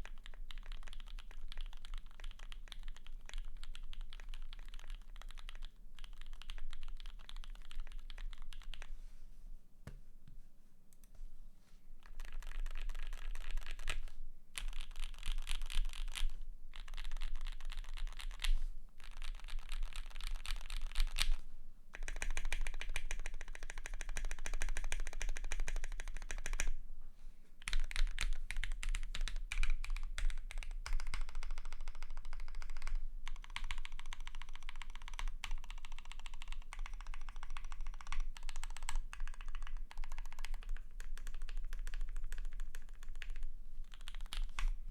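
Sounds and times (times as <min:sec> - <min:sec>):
mechanical keyboard typing: 0:00.0 - 0:08.9, 0:12.1 - 0:21.3, 0:22.0 - 0:26.7, 0:27.6 - 0:44.7.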